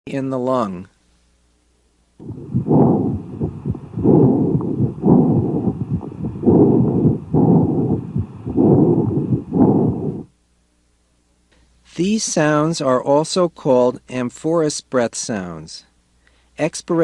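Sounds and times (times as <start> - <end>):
breath sounds through stethoscope: 2.2 - 10.3
heart sounds: 2.2 - 10.3.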